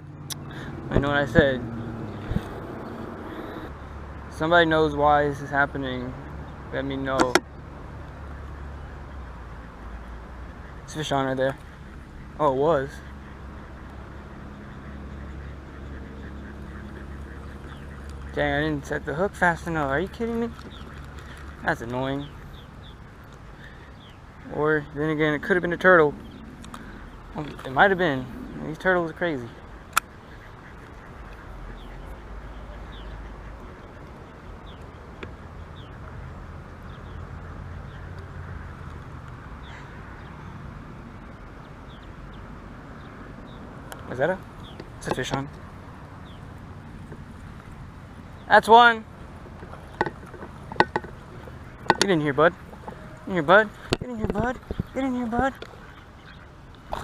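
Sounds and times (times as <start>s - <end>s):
outdoor background noise: 0.0s - 57.0s
faint duck quacks: 8.2s - 34.0s.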